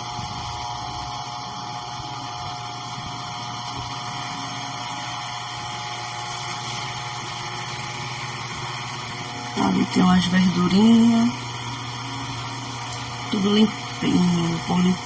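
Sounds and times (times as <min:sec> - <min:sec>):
refrigerator humming: 0:00.0 - 0:15.0.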